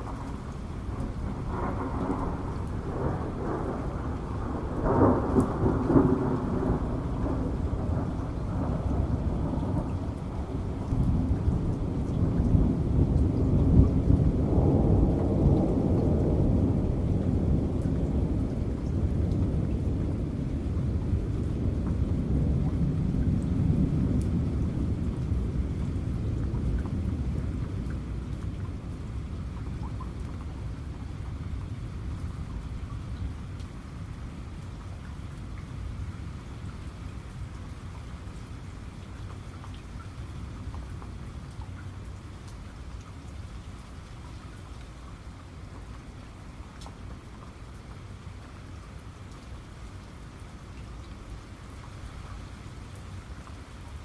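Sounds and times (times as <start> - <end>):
thunder clap and rumble: 0.0 - 32.7
steady rain: 0.0 - 54.0.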